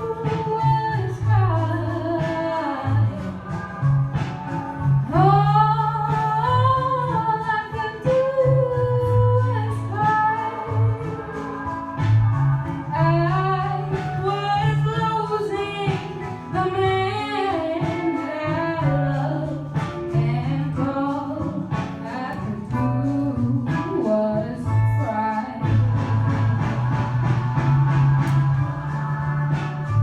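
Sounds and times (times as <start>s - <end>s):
bass and guitar backing: 0.0s - 30.0s
light percussion: 0.0s - 30.0s
woman singing: 0.0s - 30.0s.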